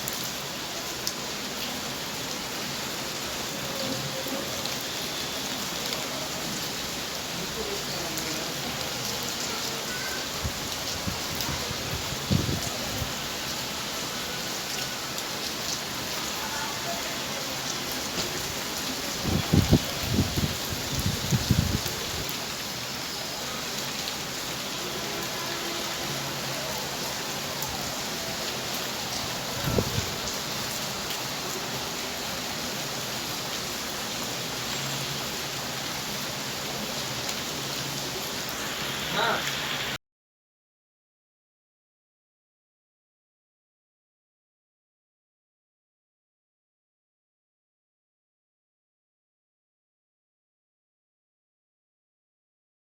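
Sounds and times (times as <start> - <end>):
heavy rain falling: 0.0 - 40.0.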